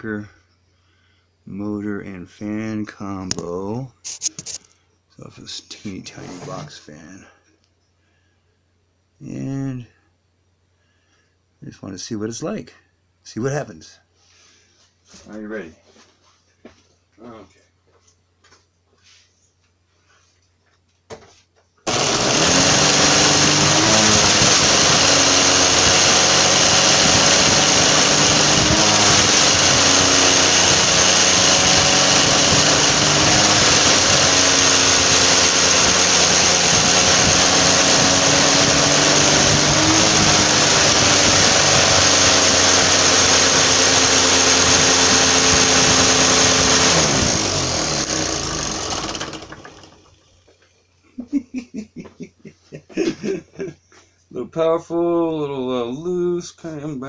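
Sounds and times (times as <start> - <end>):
box fan motor running: 21.9 - 50.7.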